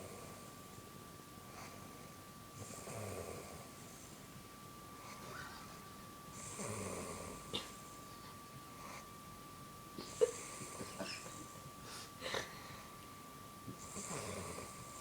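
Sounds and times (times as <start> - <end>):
rasping snoring: 6.4 - 7.4, 13.8 - 14.8.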